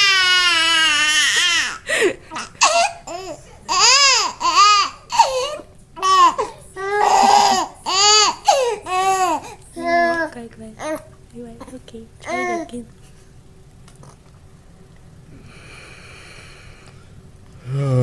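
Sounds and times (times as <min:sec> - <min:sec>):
baby crying: 0:00.0 - 0:11.1, 0:12.3 - 0:12.7.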